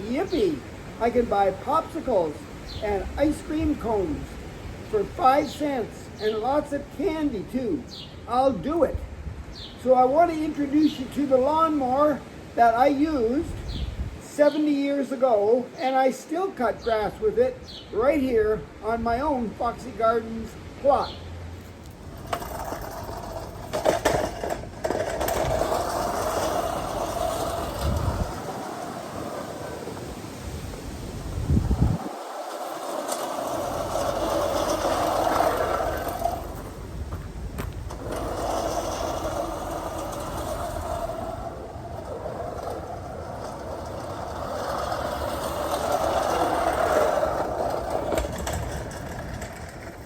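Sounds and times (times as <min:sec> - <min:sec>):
push reel mower whirring: 0:21.6 - 0:50.0
mower clicks: 0:32.0 - 0:50.0.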